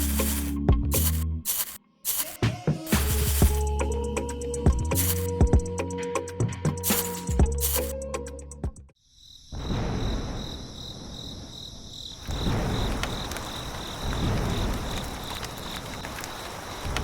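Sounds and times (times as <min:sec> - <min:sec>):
insect chirping: 0:00.0 - 0:03.8, 0:04.9 - 0:05.4, 0:06.8 - 0:08.0, 0:09.0 - 0:17.0.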